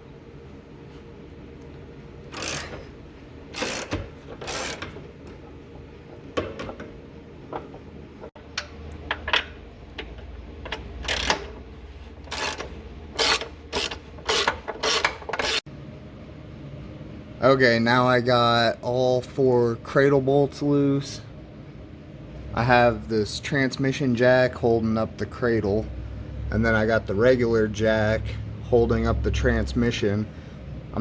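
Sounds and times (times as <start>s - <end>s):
ratchet wrench clicking: 2.3s - 2.9s, 3.6s - 5.0s, 10.0s - 11.6s, 12.2s - 15.6s.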